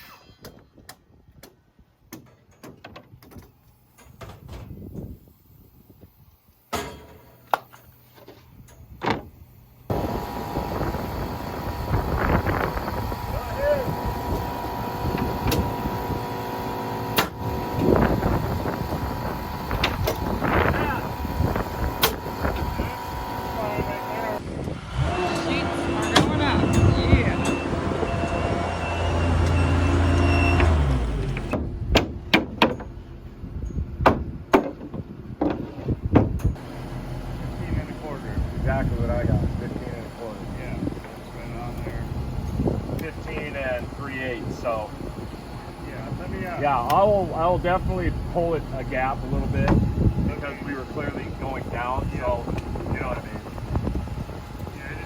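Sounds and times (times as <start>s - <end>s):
engine running: 7.5s - 33.5s, 36.4s - 55.0s
motor humming: 7.7s - 31.9s, 36.4s - 55.0s
hammer nailing on roof: 31.9s - 32.8s, 34.0s - 35.6s.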